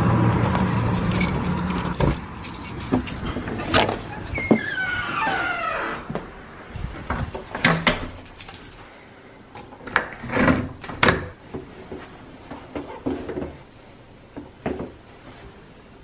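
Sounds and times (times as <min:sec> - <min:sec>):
small hard objects clinking: 0:00.3 - 0:03.4.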